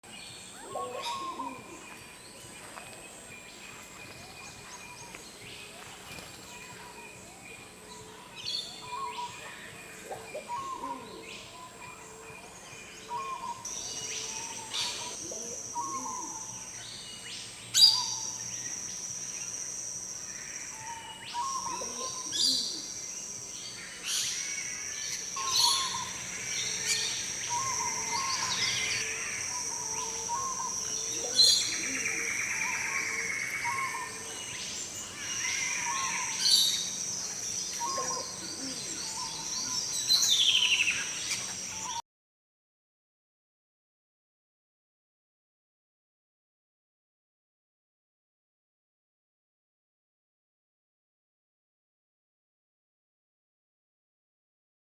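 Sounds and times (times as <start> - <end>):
bird chorus: 0.0 - 42.0
steady high-pitched whine: 0.0 - 42.0
dove calling with low notes: 0.5 - 2.9, 8.0 - 16.8, 20.2 - 23.1, 23.9 - 42.0
sharp loud bird calls: 23.8 - 42.0.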